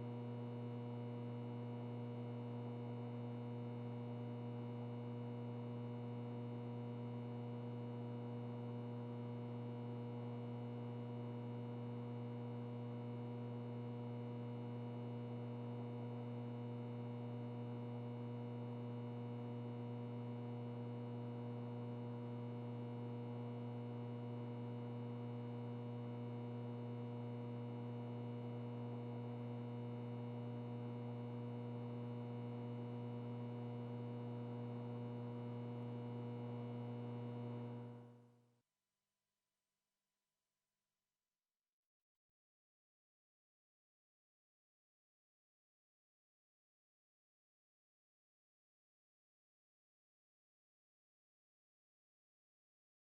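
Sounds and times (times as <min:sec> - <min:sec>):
electrical buzz hum: 0:00.0 - 0:38.1.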